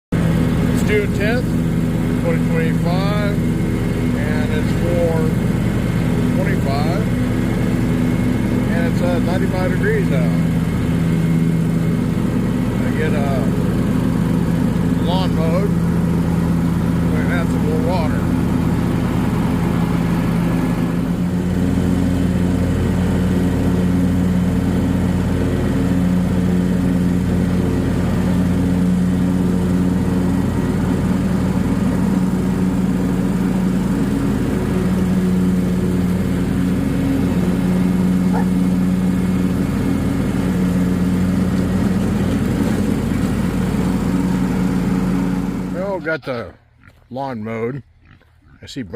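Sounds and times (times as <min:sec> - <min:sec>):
lawn tractor engine running: 0:00.1 - 0:48.8.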